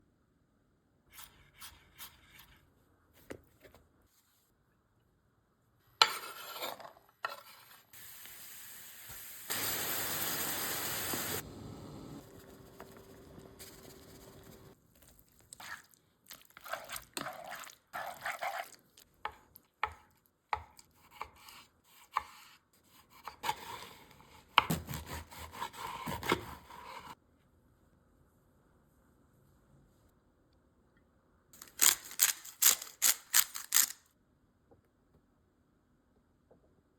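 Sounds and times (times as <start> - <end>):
steady cooking hiss: 8.0 - 14.8.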